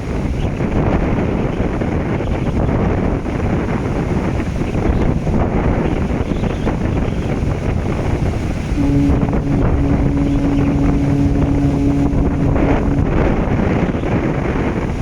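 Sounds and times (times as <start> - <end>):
wind buffeting microphone: 0.0 - 15.0
ship's horn blast: 3.7 - 15.0.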